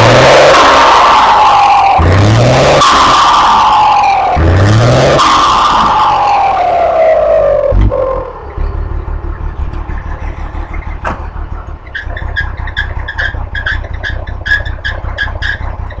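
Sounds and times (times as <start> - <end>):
engine idle rumble: 6.8 - 16.0
thump: 11.0 - 11.3.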